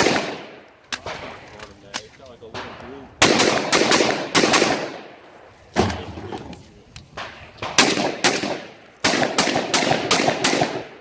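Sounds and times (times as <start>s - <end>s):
gunshots ringing out: 0.0s - 1.4s, 2.5s - 5.1s, 7.2s - 11.0s.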